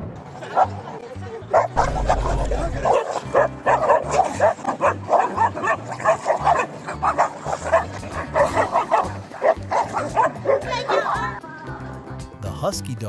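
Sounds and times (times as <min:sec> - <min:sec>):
dog barking and yipping: 0:01.5 - 0:11.4.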